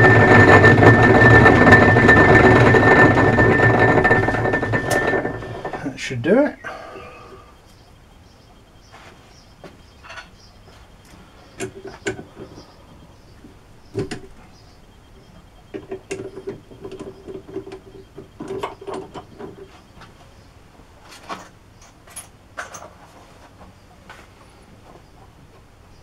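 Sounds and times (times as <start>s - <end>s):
metal rattling and scraping: 0.0s - 6.4s, 11.5s - 19.9s.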